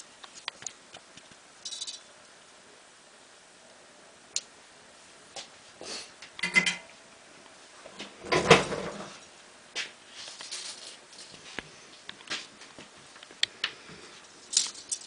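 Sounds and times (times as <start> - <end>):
rustling clatter: 10.1 - 11.6, 14.2 - 15.0.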